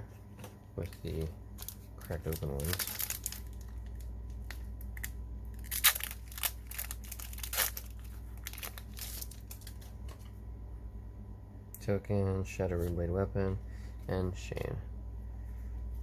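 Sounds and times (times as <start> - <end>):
foil wrapper tearing and crinkling: 0.9 - 9.8.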